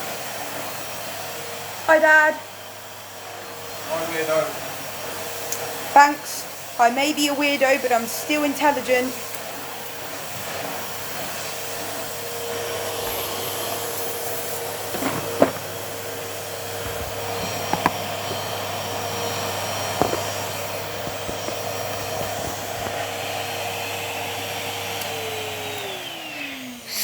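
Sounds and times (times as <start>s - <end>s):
vacuum cleaner running: 0.0s - 27.0s
vacuum hose knocking: 7.0s - 23.4s.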